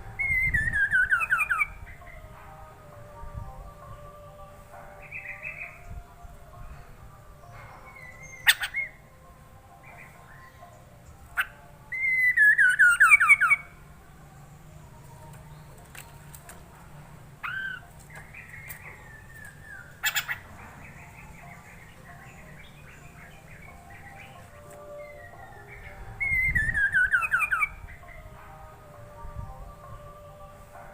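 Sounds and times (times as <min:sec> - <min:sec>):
bird whistling song: 0:00.0 - 0:02.3, 0:05.0 - 0:06.0, 0:07.4 - 0:09.0, 0:09.8 - 0:13.8, 0:17.4 - 0:28.4
bird chattering notes: 0:17.4 - 0:21.9.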